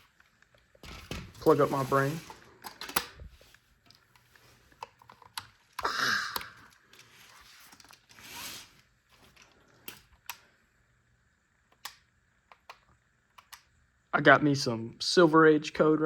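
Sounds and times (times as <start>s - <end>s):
plastic clicks and rattles: 2.6s - 3.3s, 3.9s - 7.1s
short hissing: 8.1s - 8.9s.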